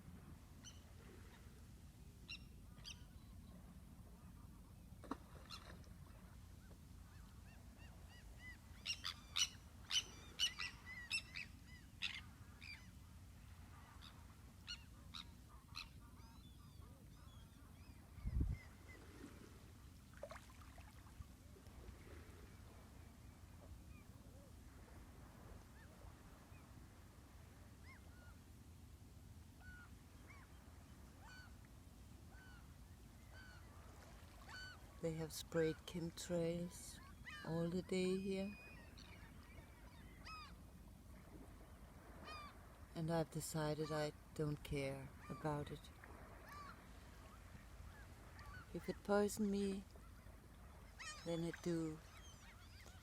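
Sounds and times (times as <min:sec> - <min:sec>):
faint low background hum: 0:00.0 - 0:53.0
distant bird calls: 0:00.6 - 0:01.5, 0:02.3 - 0:03.5, 0:04.2 - 0:21.2, 0:27.8 - 0:28.4, 0:29.6 - 0:31.7, 0:32.3 - 0:35.0, 0:36.8 - 0:40.8, 0:41.4 - 0:42.7, 0:45.0 - 0:53.0.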